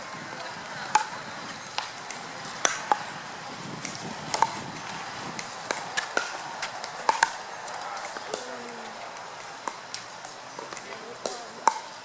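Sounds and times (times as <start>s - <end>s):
ball bouncing on court: 0.9s - 3.1s, 3.8s - 4.7s, 5.3s - 12.0s
paddles striking plastic ball: 10.7s - 11.9s.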